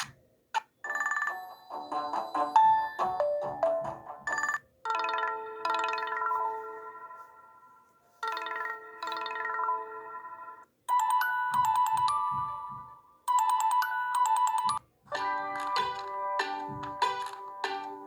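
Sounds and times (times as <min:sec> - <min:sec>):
phone ringtones: 0:00.8 - 0:14.8
melodic tone: 0:02.5 - 0:17.8.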